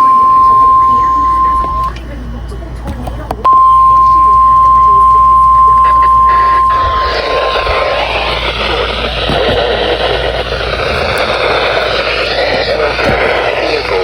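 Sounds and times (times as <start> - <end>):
steady alarm tone: 0.0 - 2.0, 3.4 - 14.0
radio static hiss: 0.0 - 14.0.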